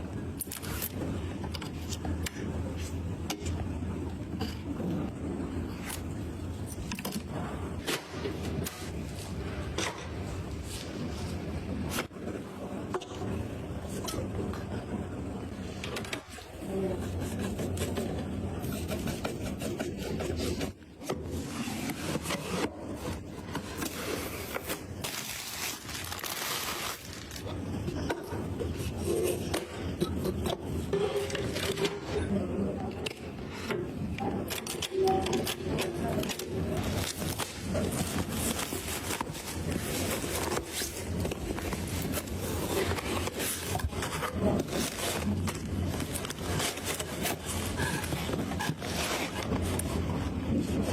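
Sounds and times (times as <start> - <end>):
scraping and rubbing: 16.6 - 27.9.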